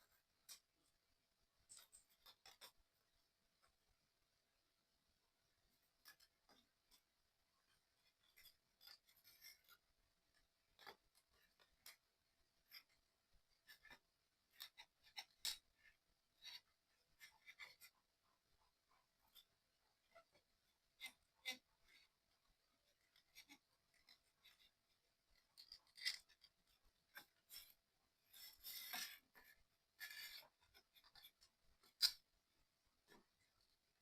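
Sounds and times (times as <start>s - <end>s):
light scraping: 22.9s - 32.3s.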